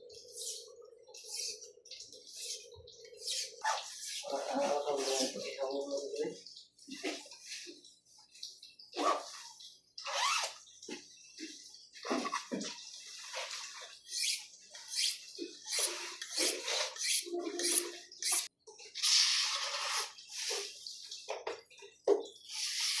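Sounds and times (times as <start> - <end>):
knife blade scraping on sharpener: 14.2 - 18.5.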